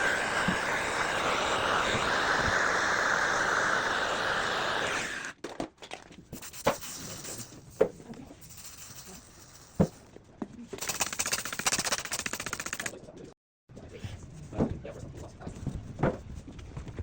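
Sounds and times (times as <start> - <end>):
fast even ratchet clicking: 8.4 - 10.0, 10.8 - 13.0.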